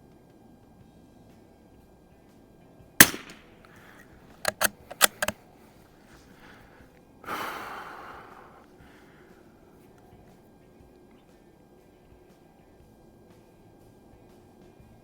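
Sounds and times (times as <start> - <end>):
rifle bolt clicking: 3.0 - 5.3
rifle shot: 3.0 - 5.3.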